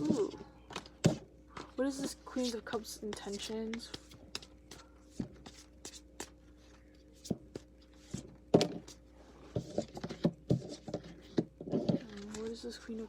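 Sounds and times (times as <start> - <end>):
cards being shuffled: 1.9 - 9.0.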